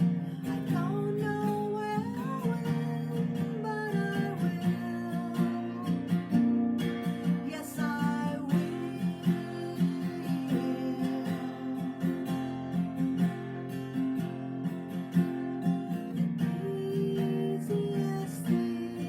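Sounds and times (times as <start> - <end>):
person singing: 0.0 - 6.3, 7.3 - 12.7, 16.4 - 19.0
acoustic guitar strumming: 0.0 - 19.0.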